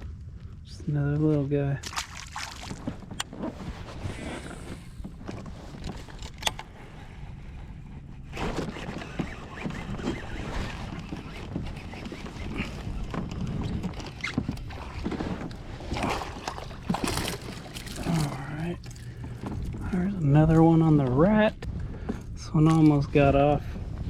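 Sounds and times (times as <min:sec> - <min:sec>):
low rumble: 0:14.6 - 0:24.0.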